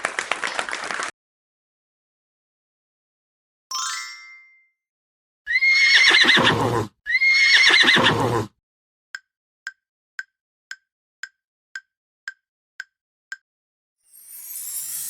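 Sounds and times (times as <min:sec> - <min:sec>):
horse whinnying: 0:05.5 - 0:08.5.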